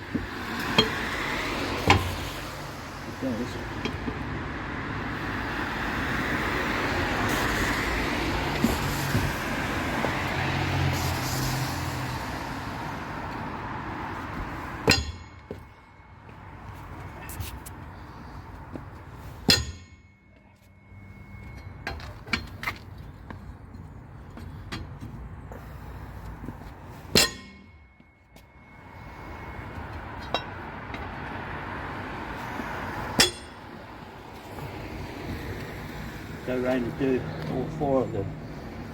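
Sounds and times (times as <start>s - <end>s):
wheel brace clanking on nuts: 0.0s - 4.4s, 14.3s - 15.9s, 18.7s - 23.3s, 26.5s - 28.6s, 29.8s - 31.2s, 33.1s - 33.8s
vehicle passing: 0.0s - 19.5s, 28.5s - 38.9s
metallic clang: 14.8s - 15.7s, 27.1s - 27.9s, 33.2s - 33.7s.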